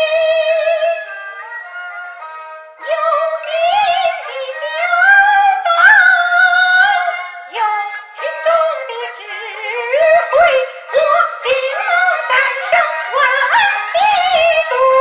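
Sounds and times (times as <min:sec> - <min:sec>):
opera singing high melodic line: 0:02.8 - 0:15.0.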